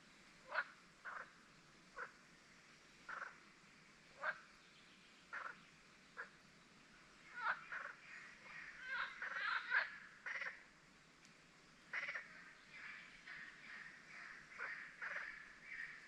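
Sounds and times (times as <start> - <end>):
birds calling: 3.0 - 3.5, 4.1 - 10.7, 11.7 - 16.0.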